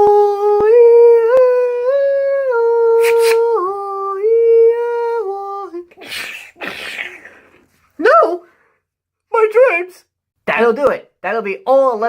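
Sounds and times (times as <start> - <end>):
person humming descending notes: 0.0 - 6.0.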